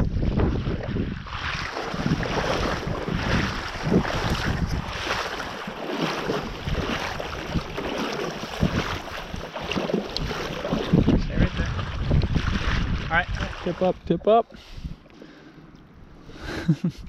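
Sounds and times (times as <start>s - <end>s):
wind buffeting microphone: 0.0s - 15.1s.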